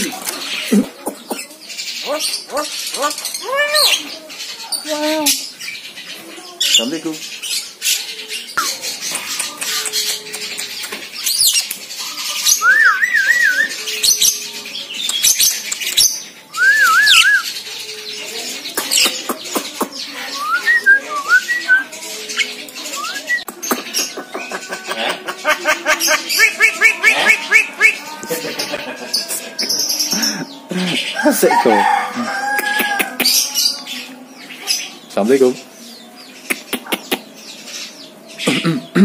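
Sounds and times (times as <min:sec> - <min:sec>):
bird whistling and chirping: 0:12.4 - 0:14.0, 0:16.5 - 0:17.6.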